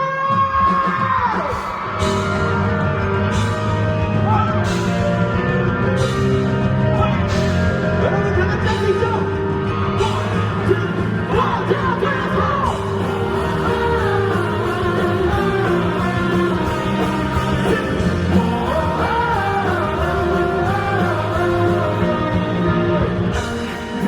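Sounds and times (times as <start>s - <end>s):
live pop-rock band: 0.0s - 24.0s
man singing: 10.0s - 24.0s.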